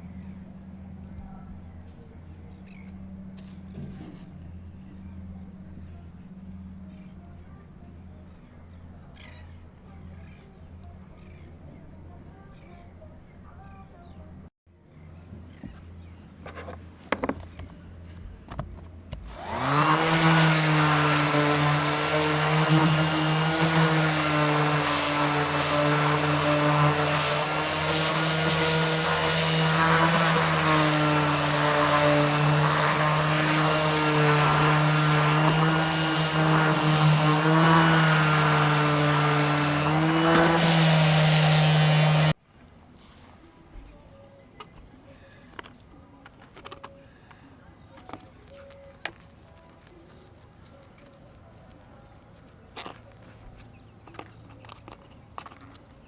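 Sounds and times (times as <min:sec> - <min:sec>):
electric power sander running: 0:19.2 - 0:42.4.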